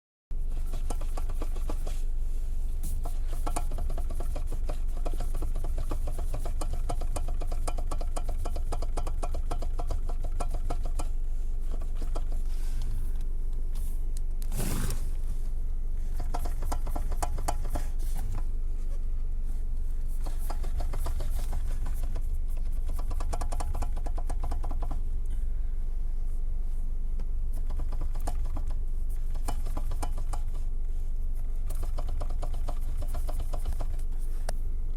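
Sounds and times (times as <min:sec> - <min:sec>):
steady low rumble: 0:00.3 - 0:34.9
fast rattling clicks: 0:03.0 - 0:12.4, 0:16.2 - 0:17.9, 0:20.2 - 0:25.0, 0:27.6 - 0:30.6, 0:31.7 - 0:34.1.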